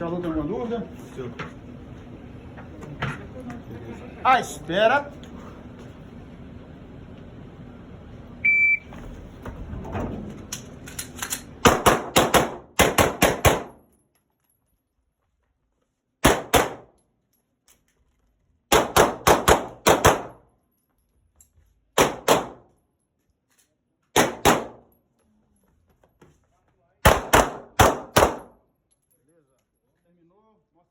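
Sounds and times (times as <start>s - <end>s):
shot timer beep: 8.4s - 8.9s
pistol shots: 11.6s - 13.8s, 16.2s - 16.9s, 18.7s - 20.4s, 22.0s - 22.6s, 24.2s - 24.8s, 27.0s - 28.6s.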